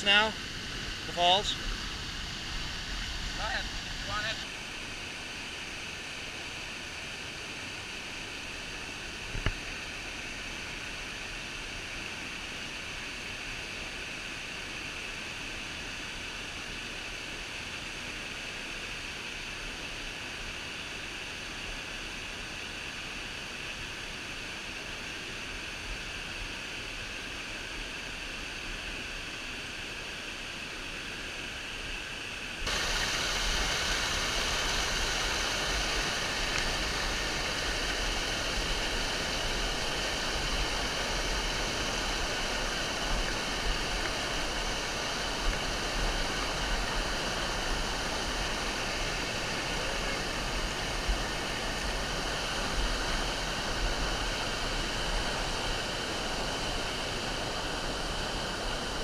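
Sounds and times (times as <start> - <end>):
waterfall rushing: 0.0 - 9.0, 32.6 - 59.0.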